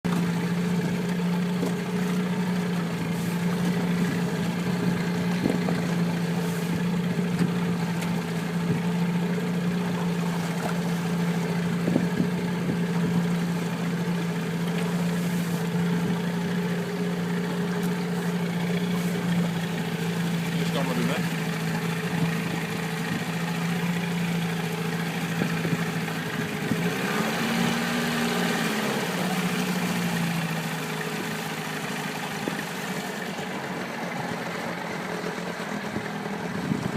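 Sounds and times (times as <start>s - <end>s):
small boat engine running: 0.0s - 36.9s
water noise: 0.0s - 36.9s
wind noise: 36.5s - 36.9s.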